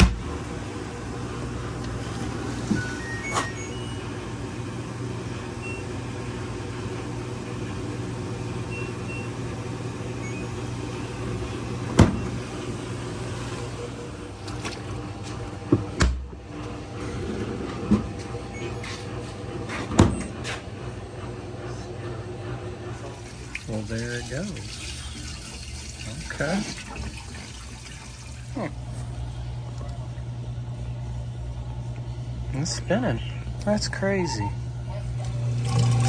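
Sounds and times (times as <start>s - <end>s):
low electrical hum: 22.7s - 36.0s.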